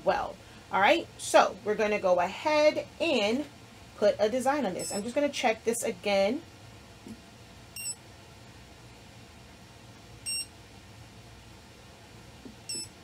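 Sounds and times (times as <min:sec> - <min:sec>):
faint steady hum: 0:00.0 - 0:13.0
short high-pitched electronic beeps: 0:07.8 - 0:08.0, 0:10.3 - 0:10.5, 0:12.7 - 0:13.0.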